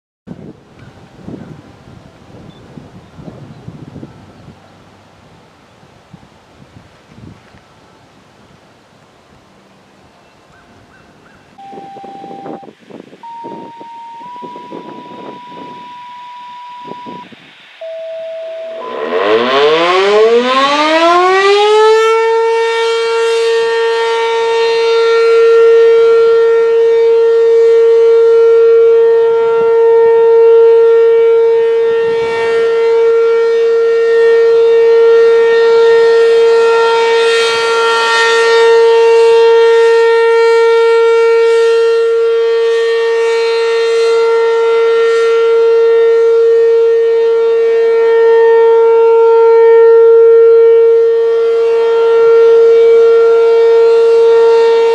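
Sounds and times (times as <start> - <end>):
outdoor warning siren winding up: 11.6 - 54.9.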